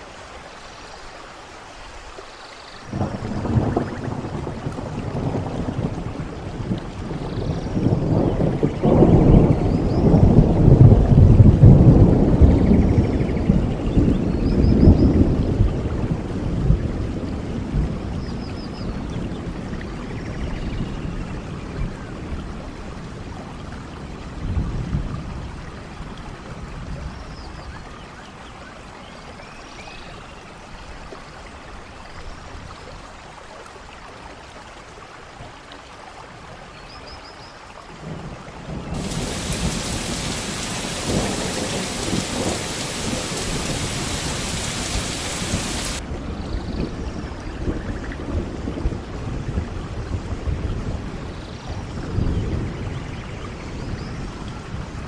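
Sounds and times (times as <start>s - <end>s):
steady rain: 0.0s - 13.8s, 39.0s - 46.0s
thunder rumbling: 39.0s - 46.0s.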